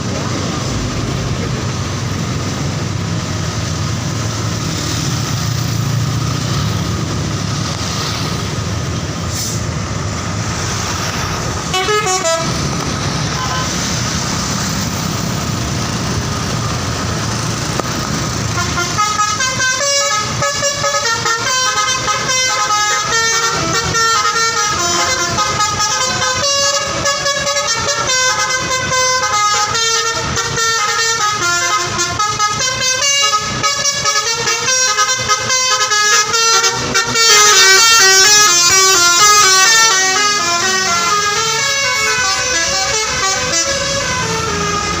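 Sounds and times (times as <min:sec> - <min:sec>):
bus engine noise: 0:00.0 - 0:45.0
multi-tone air horn melody: 0:11.6 - 0:12.6, 0:18.5 - 0:45.0.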